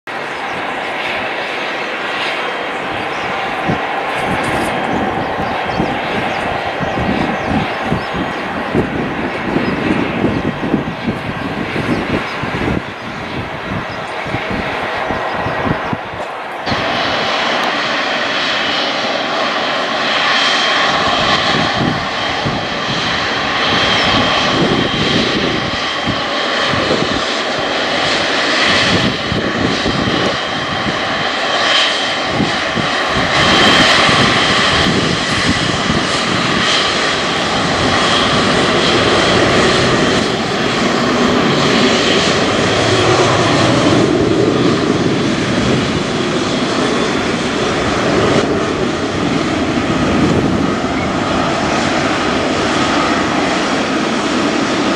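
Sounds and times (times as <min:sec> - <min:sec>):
jet engines roaring: 0:00.0 - 0:54.9
high engine whine: 0:00.1 - 0:54.9.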